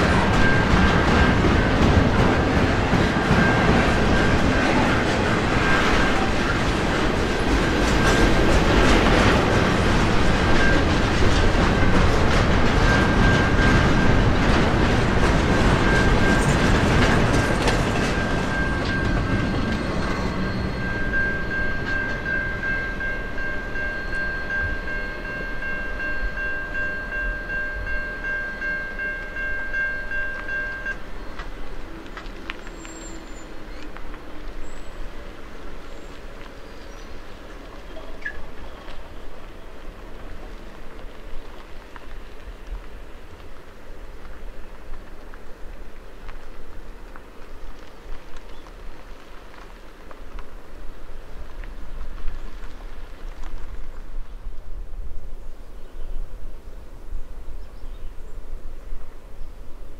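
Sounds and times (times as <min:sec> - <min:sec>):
train wheels clacking over rails: 0:00.0 - 0:45.5
high-pitched squeal: 0:15.8 - 0:26.0.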